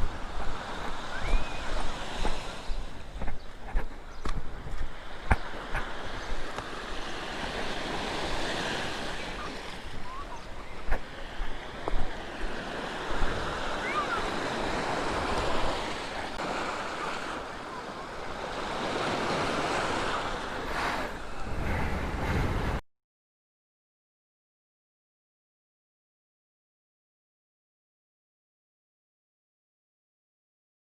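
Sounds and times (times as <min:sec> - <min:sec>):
wind on microphone: 0:00.0 - 0:17.3, 0:18.2 - 0:22.8
sea waves washing on shore: 0:00.0 - 0:22.8.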